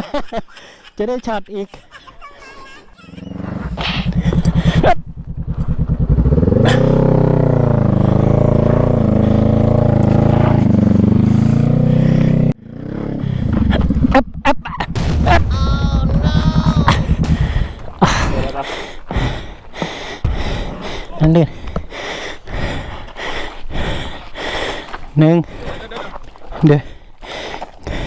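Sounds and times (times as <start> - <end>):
motorcycle engine revving: 3.0 - 20.7.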